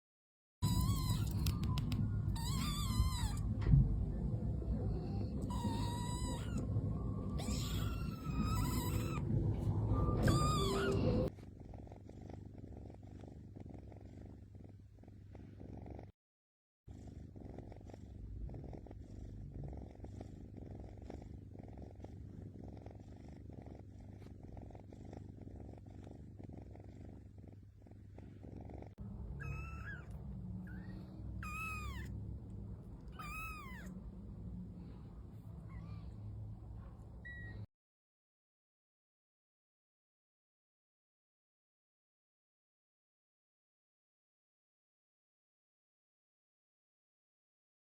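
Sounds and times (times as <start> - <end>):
cat mewing: 0.6 - 3.5, 5.4 - 6.7, 7.3 - 9.3, 10.0 - 11.3, 29.2 - 32.1, 33.1 - 34.0
cat purring: 0.7 - 16.2, 16.9 - 37.7.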